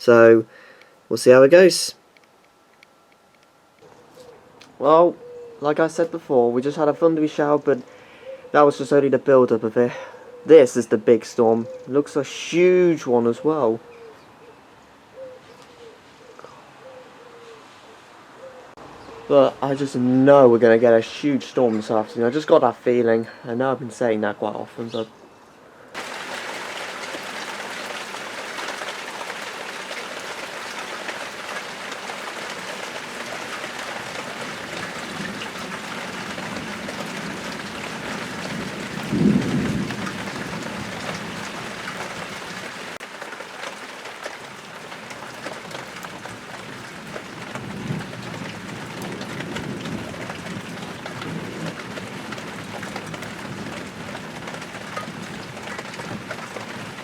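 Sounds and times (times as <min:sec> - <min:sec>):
rain falling: 0:26.0 - 0:57.0
rolling thunder: 0:33.4 - 0:42.1
loud thunder clap: 0:34.5 - 0:41.7.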